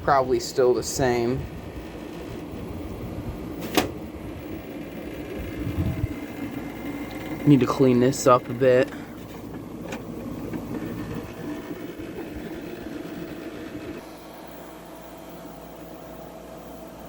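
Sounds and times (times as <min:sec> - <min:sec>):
air conditioner humming: 0:00.0 - 0:17.0
handling noise on unit: 0:00.0 - 0:17.0
sharp click: 0:03.6 - 0:04.0.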